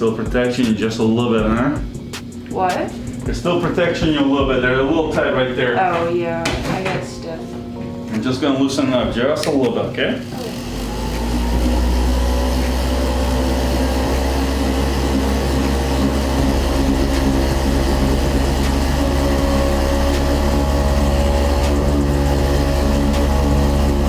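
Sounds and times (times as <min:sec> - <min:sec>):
massage gun motor hum: 0:08.9 - 0:24.0.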